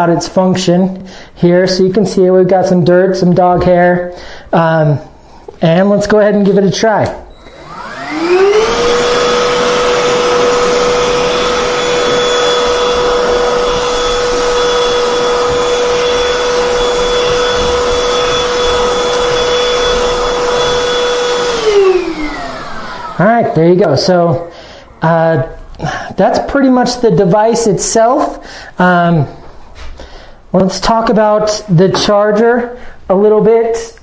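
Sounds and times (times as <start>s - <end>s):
handheld vacuum motor whining: 7.3s - 23.6s.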